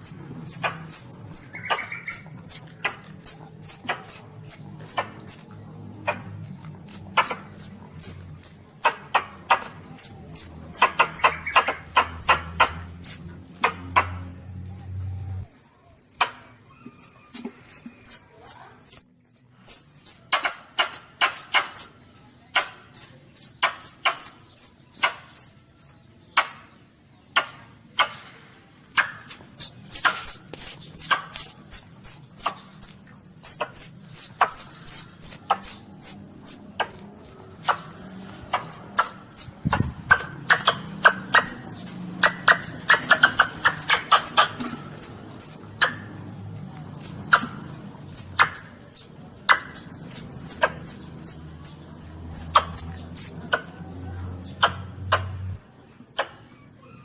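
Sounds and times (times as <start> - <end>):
baby civet high-pitched squeaks: 0.0 - 5.5, 6.8 - 13.3, 16.7 - 26.0, 29.2 - 46.0, 47.0 - 53.6.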